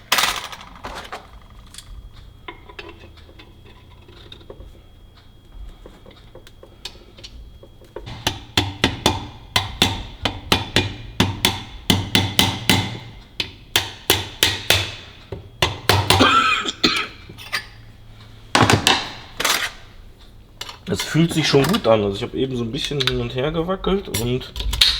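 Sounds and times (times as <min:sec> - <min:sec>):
hammer striking metal: 0:08.1 - 0:13.1.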